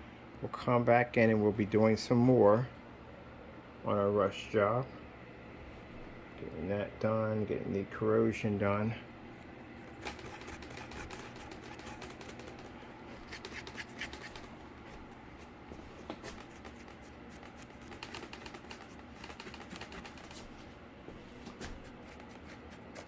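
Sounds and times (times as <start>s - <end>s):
paintbrush scratching on cardboard: 9.9s - 12.6s, 13.2s - 20.5s, 21.7s - 23.0s.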